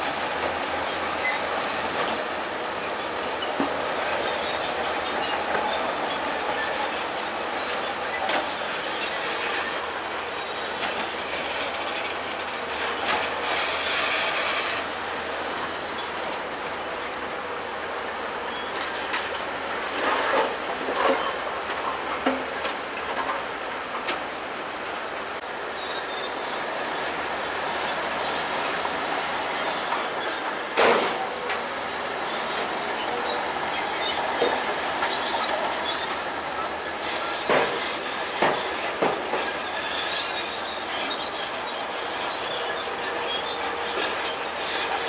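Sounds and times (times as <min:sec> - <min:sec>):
bulldozer tracks squealing and clanking: 0:00.0 - 0:23.6, 0:25.4 - 0:45.0
steady mechanical noise: 0:00.0 - 0:45.0.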